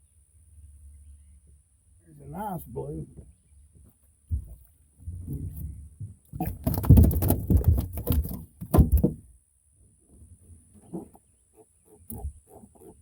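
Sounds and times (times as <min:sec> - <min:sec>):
sharp knocks: 0:06.4 - 0:09.2.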